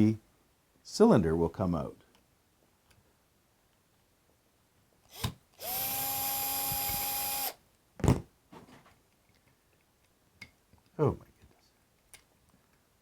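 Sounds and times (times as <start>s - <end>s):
power screwdriver running: 5.1s - 7.6s.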